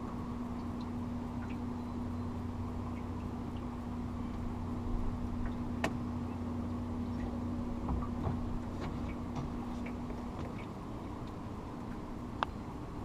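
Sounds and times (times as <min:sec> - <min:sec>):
boat motor running: 0:00.0 - 0:13.0.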